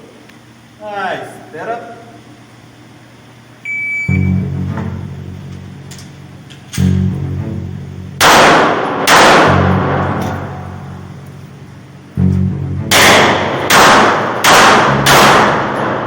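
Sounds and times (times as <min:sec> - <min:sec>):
background music with deep bass: 0:04.2 - 0:08.2, 0:09.2 - 0:16.0
loud booming hits: 0:08.2 - 0:11.2, 0:12.8 - 0:16.0.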